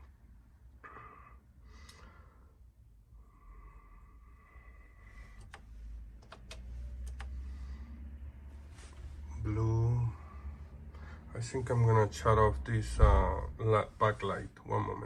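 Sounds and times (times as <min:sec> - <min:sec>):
keyboard key clicks: 0:06.2 - 0:07.3.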